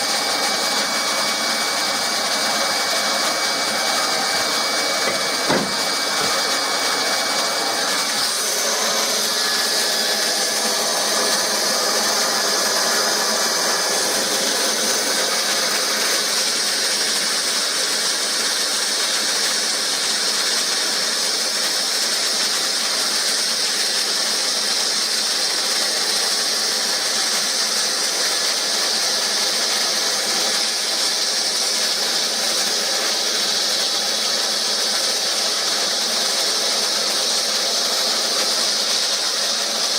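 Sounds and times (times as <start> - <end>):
hot-air blower hissing: 0.0 - 39.9
short knock: 5.0 - 6.3.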